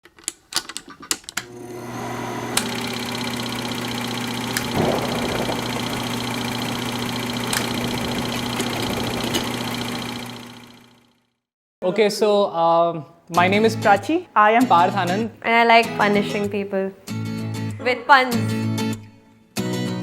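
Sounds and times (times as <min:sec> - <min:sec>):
machine hum: 0:01.4 - 0:11.2
sharp clicks: 0:04.5 - 0:10.2.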